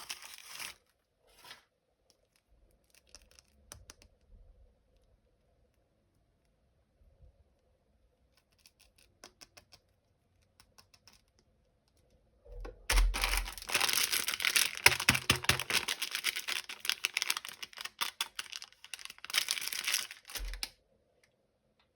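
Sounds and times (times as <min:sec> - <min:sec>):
plastic wrapper crinkling: 0:00.0 - 0:00.8, 0:12.8 - 0:20.8
plastic packaging clicks and taps: 0:12.7 - 0:20.7.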